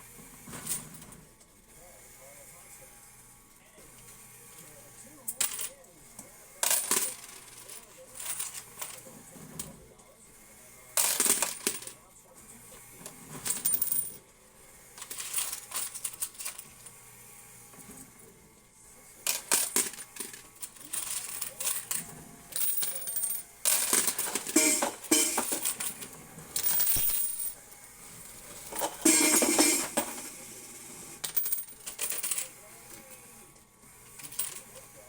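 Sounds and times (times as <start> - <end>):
coins clattering in arcade machine: 0.5 - 1.4, 5.1 - 5.9, 6.6 - 9.8, 11.0 - 12.0, 13.0 - 14.3, 14.9 - 17.0, 19.2 - 33.4, 34.0 - 35.0.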